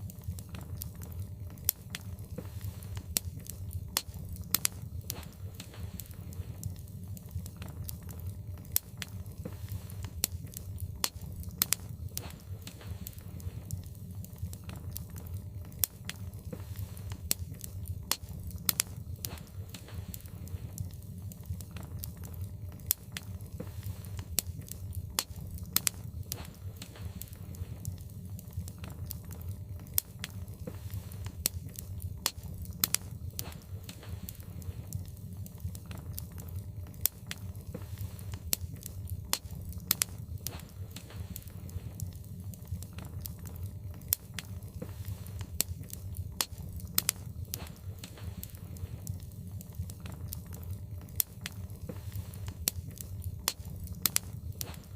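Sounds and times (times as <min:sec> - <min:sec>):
logs crackling in fireplace: 0:00.0 - 0:54.9
low steady rumble: 0:00.0 - 0:54.9.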